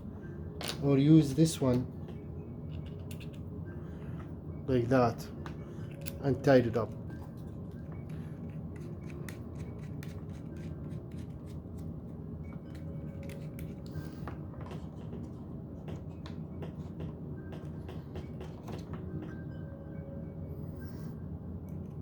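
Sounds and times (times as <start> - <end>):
steady low hum: 0.0 - 22.0
small tool parts clicking and tapping: 2.7 - 3.4.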